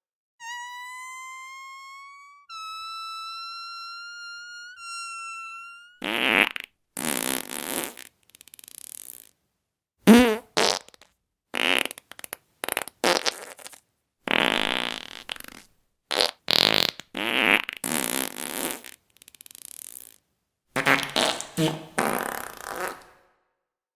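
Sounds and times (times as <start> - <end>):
steady high tone: 0.4 - 6.0
fart sounds: 4.6 - 9.3, 10.1 - 20.2, 20.8 - 23.3.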